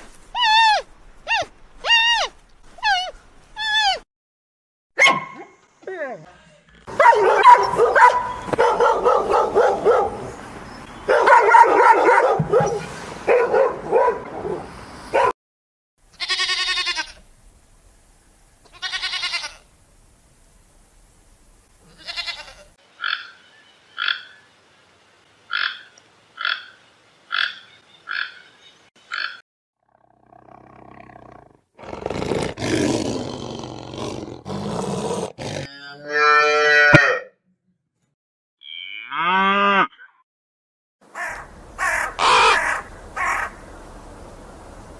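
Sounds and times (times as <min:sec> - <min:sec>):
animal calls: 0:41.2 - 0:43.6.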